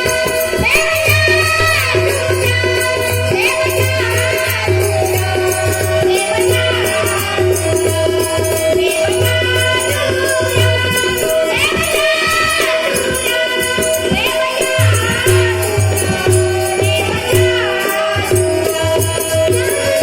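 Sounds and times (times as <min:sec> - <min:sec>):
child singing: 0:00.0 - 0:20.0
harmonium held notes: 0:00.0 - 0:20.0
jingling hand percussion: 0:00.0 - 0:20.0.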